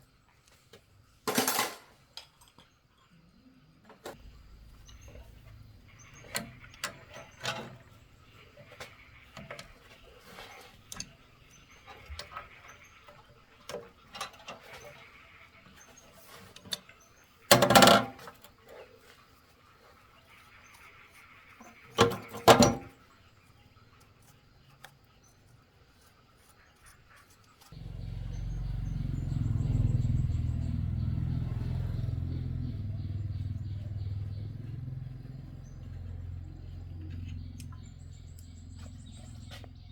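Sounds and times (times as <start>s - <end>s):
tractor engine droning: 4.2s - 12.6s, 27.8s - 39.9s.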